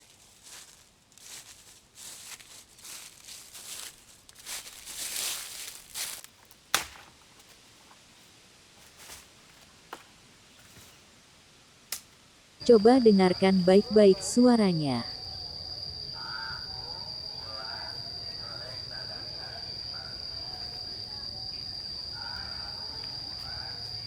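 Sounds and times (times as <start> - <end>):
rustling in undergrowth: 0.0 - 11.4
sharp crack: 6.7 - 7.1.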